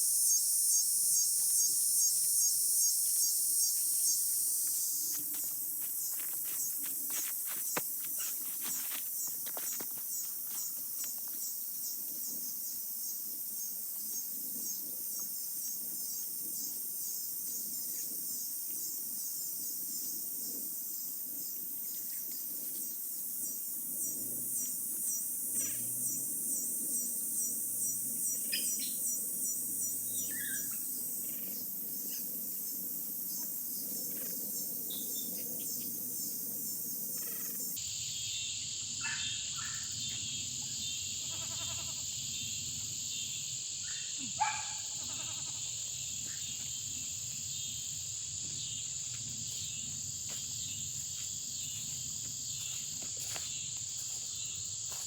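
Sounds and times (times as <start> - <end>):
short insect chirps: 0.0 - 12.0
insects trilling: 0.0 - 55.0.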